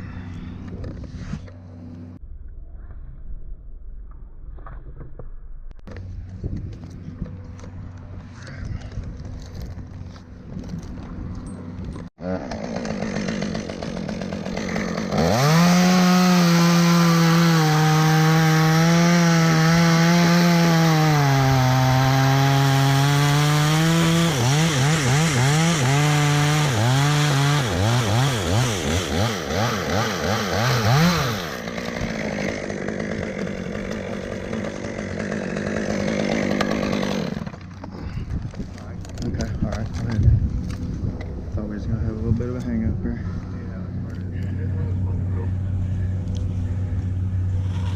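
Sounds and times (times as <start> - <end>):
chainsaw cutting wood: 12.2 - 40.1.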